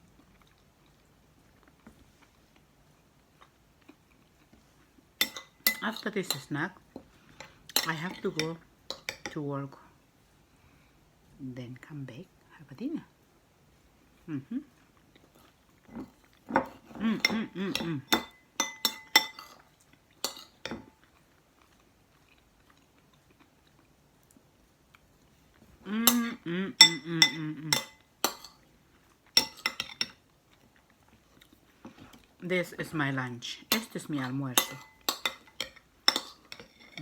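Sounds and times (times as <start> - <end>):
cutlery clinking against a dish: 5.2 - 6.5, 7.4 - 9.4, 15.9 - 21.0, 26.1 - 28.6, 29.3 - 30.2, 33.7 - 37.0.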